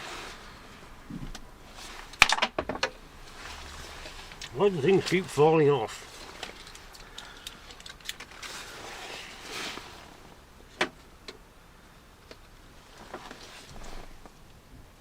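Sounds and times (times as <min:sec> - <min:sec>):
parts clicking and rustling: 0:01.1 - 0:05.4, 0:06.1 - 0:09.9.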